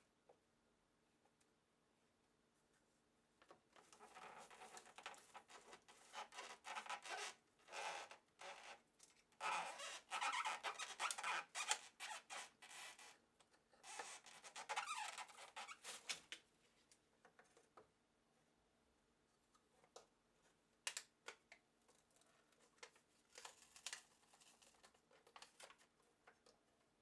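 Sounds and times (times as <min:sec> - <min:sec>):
squeaky rubbing and scraping: 0:04.0 - 0:08.8, 0:09.4 - 0:13.2, 0:13.9 - 0:16.1.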